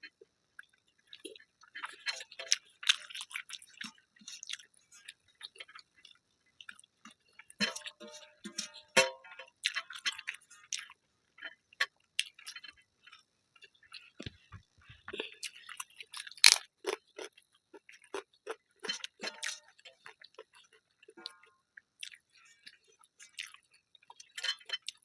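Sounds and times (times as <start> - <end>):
chewing and smacking: 0.6 - 7.2, 12.2 - 21.2, 22.0 - 25.0
small clicks and crunches: 16.4 - 16.6.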